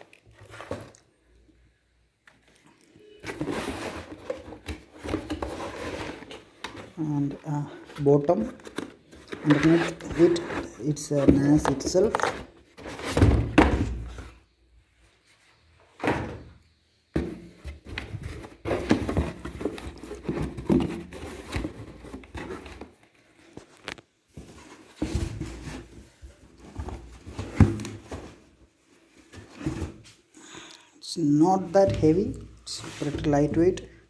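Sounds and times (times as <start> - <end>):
cardboard rustling and scraping: 0.3 - 1.2, 3.0 - 16.0, 17.2 - 30.3, 31.6 - 34.0.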